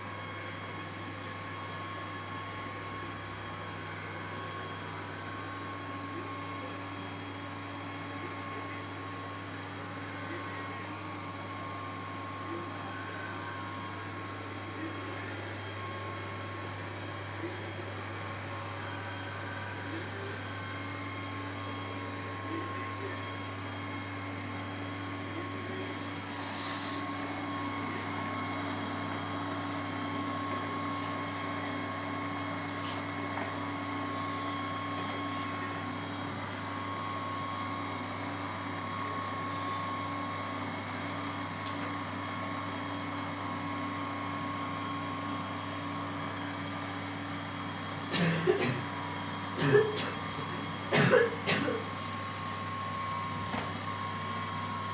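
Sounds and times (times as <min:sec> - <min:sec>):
robot vacuum cleaner whirring: 0:25.9 - 0:33.9.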